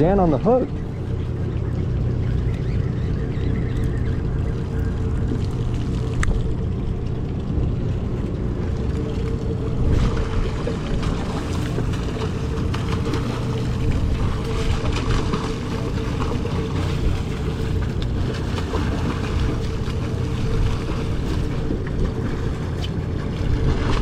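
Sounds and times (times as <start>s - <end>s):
boat engine droning: 0.0s - 24.0s
water noise: 0.0s - 24.0s
wind: 0.0s - 24.0s.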